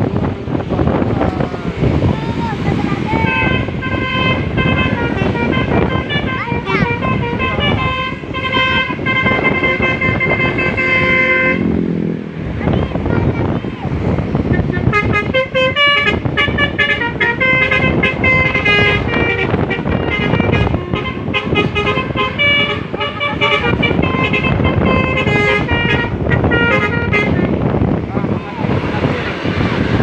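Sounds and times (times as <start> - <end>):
bus horn playing a tune: 2.6 - 11.8, 14.5 - 28.0.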